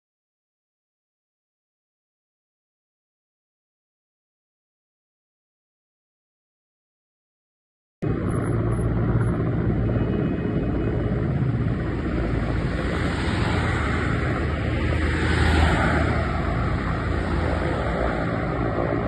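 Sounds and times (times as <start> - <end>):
aircraft engine noise: 8.0 - 19.0.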